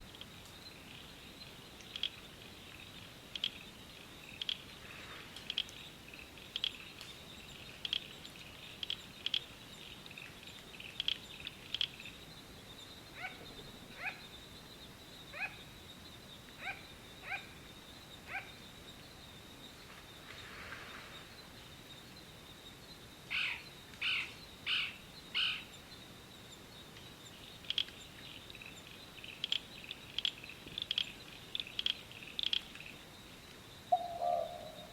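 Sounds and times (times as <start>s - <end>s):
wild birds calling: 0.0s - 22.2s, 23.3s - 26.2s, 33.8s - 34.9s.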